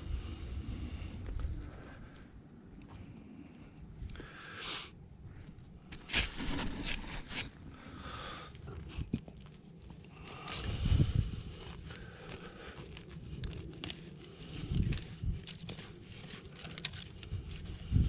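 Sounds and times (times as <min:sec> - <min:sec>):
mulch and soil scraping and crunching: 0:05.8 - 0:18.0.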